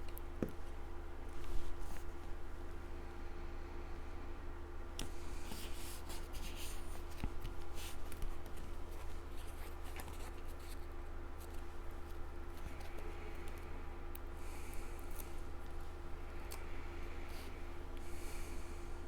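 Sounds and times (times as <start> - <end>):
card stock being handled: 5.0 - 13.6.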